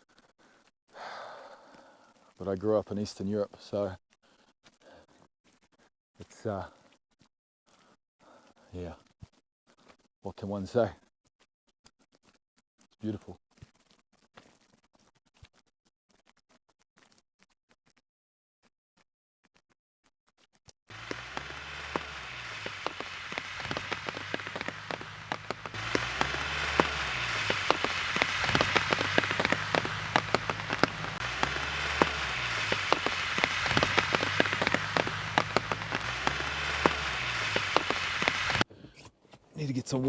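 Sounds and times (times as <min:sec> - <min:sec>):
rain pattering on a surface: 0:20.9 - 0:38.6.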